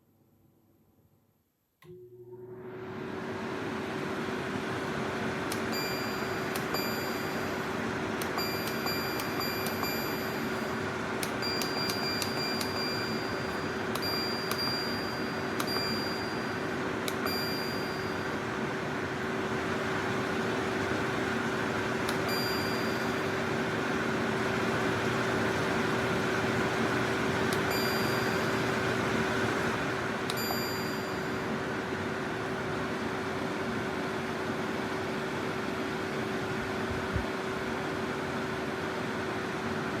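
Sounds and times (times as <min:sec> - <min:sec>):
air conditioner fan whoosh: 0:02.6 - 0:40.0
high chime-like tones: 0:05.7 - 0:07.7, 0:08.4 - 0:10.8, 0:11.4 - 0:18.4, 0:22.3 - 0:23.3, 0:27.7 - 0:28.8, 0:30.4 - 0:31.5.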